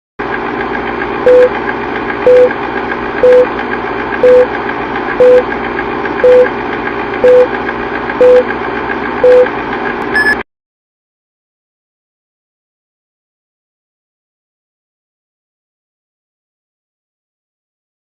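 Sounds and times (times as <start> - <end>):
higher electronic beep: 1.3 - 1.5, 2.3 - 2.5, 3.2 - 3.5, 4.2 - 4.5, 5.2 - 5.4, 6.2 - 6.5, 7.2 - 7.5, 8.2 - 8.4, 9.2 - 9.5, 10.2 - 10.4
short electronic beeps: 1.3 - 1.6, 2.3 - 2.5, 3.2 - 3.5, 4.2 - 4.5, 5.2 - 5.4, 6.2 - 6.5, 7.2 - 7.5, 8.2 - 8.5, 9.2 - 9.5, 10.1 - 10.4.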